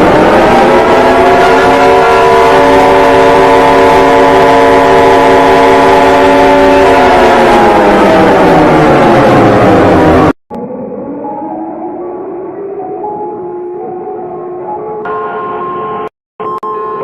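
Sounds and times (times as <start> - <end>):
distorted emergency siren tone: 0.0 - 17.0.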